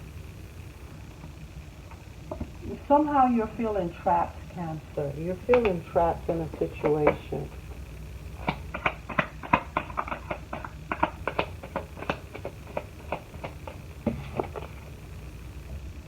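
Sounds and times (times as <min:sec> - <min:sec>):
cards clicking on a table: 0:05.5 - 0:07.3, 0:08.4 - 0:14.8.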